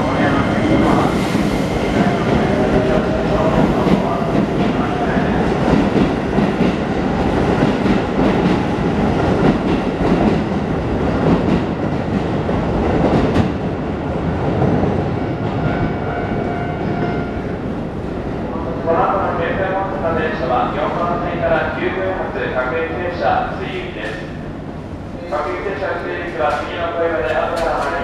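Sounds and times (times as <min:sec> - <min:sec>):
train wheels on rails: 0:00.0 - 0:13.8, 0:26.2 - 0:28.0.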